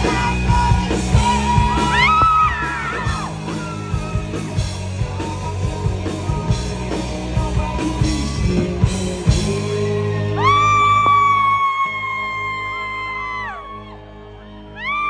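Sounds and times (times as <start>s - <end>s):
live rock band playing: 0.0s - 11.6s.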